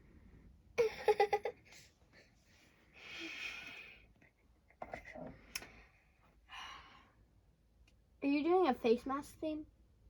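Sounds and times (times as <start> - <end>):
girl giggling: 0.8 - 1.8.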